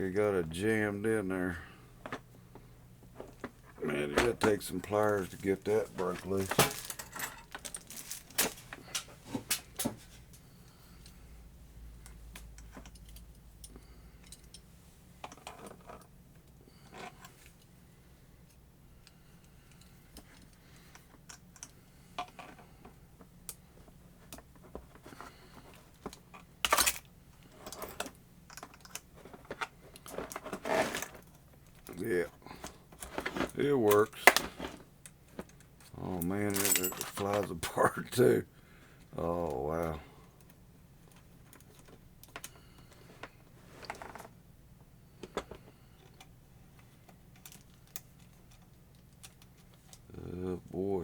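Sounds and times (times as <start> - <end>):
metal parts clattering: 4.2 - 9.6, 36.5 - 37.5
light metal clicks and clinks: 12.0 - 14.7, 36.5 - 37.5.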